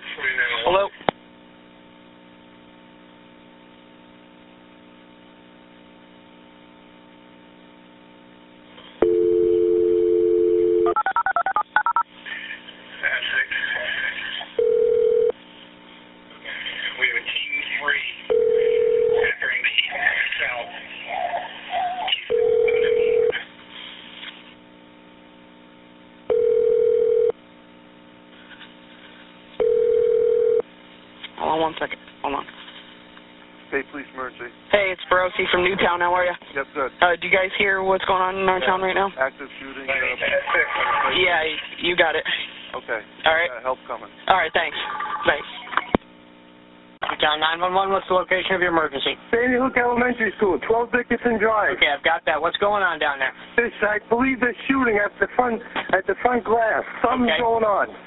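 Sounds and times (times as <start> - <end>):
faint telephone line hum: 0.1 - 21.2, 22.0 - 40.4
telephone dial tone: 9.0 - 12.0, 14.6 - 15.3, 22.3 - 23.3, 26.3 - 27.3, 29.6 - 30.6.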